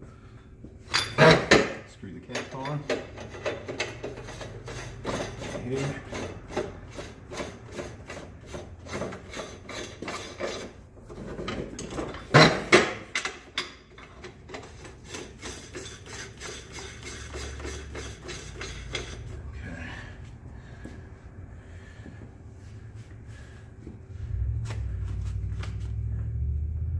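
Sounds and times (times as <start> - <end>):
metal threads scraping: 0.9 - 19.8.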